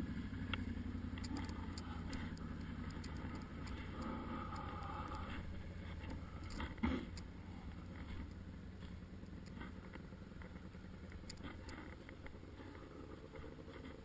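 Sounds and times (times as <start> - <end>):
quad bike engine running: 0.0 - 14.0
small clicks: 0.5 - 5.4, 6.0 - 7.3, 7.9 - 12.4.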